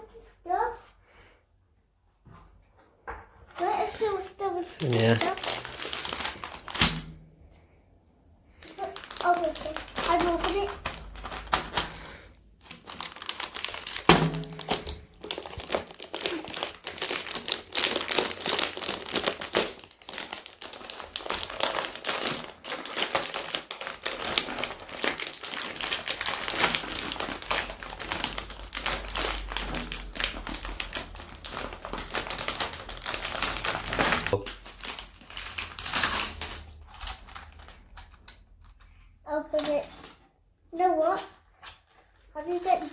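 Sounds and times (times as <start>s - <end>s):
plastic and cardboard crinkling: 3.5s - 7.2s, 8.5s - 38.4s.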